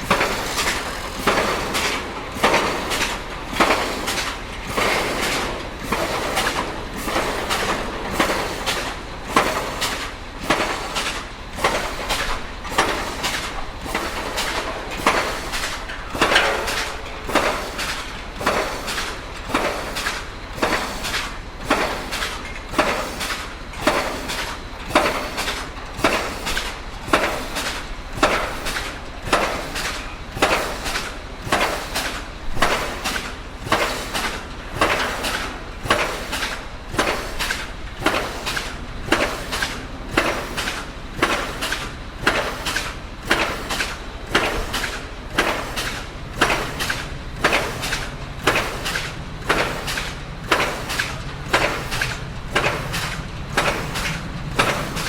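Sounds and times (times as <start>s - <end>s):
pile driver hammering: 0.0s - 55.0s.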